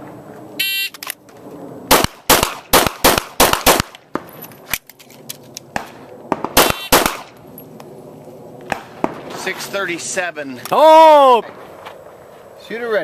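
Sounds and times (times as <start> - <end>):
handgun shots: 1.9 - 4.0, 5.8 - 7.3.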